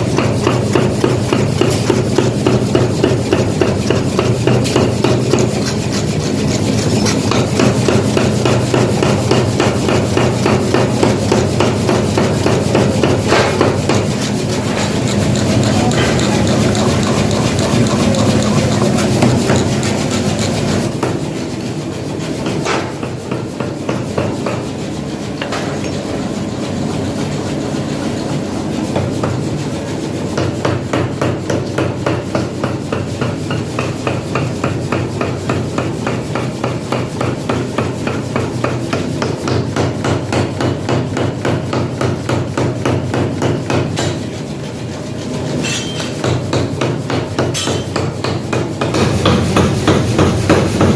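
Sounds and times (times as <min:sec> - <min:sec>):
steady machine noise: 0:00.0 - 0:22.5
hammer striking metal: 0:00.1 - 0:05.8, 0:06.6 - 0:21.2, 0:45.6 - 0:50.9.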